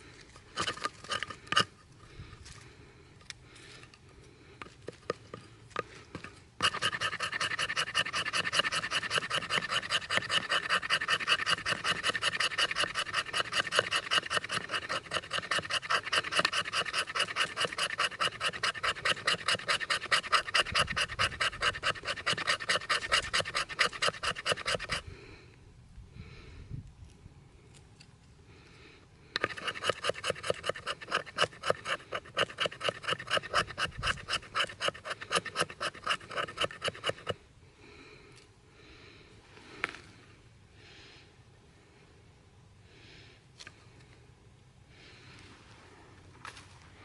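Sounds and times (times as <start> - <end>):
hand saw cutting wood: 0.5 - 1.7, 6.1 - 25.1, 29.4 - 37.4.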